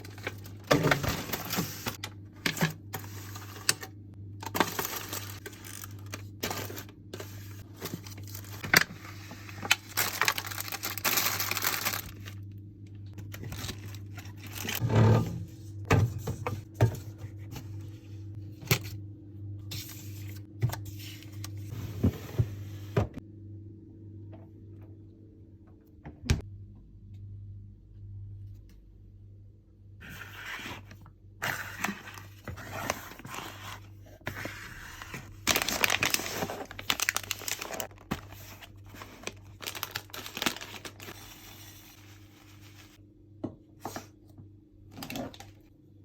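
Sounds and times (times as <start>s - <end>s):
groceries clinking and knocking: 0.0s - 9.1s
packaging rustling: 4.4s - 12.4s, 13.2s - 14.8s, 31.5s - 41.9s.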